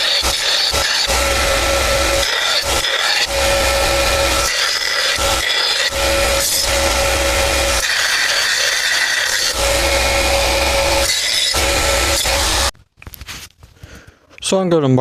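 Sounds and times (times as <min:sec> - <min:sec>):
steady tone: 0:00.0 - 0:12.7
power tool abrading: 0:00.0 - 0:12.8.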